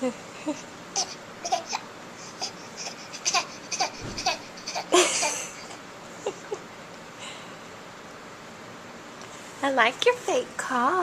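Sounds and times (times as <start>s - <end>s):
baby voiced squeaks: 3.2s - 4.9s.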